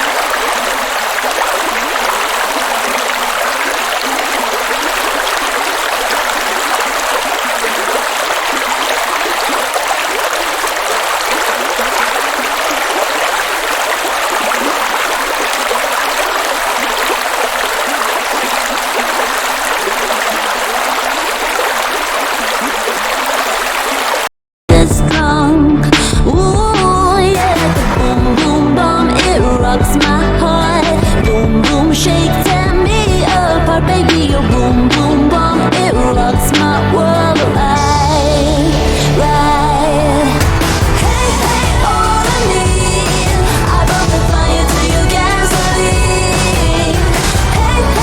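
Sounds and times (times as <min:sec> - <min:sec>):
waterfall rushing: 0:00.0 - 0:24.3, 0:37.8 - 0:48.0.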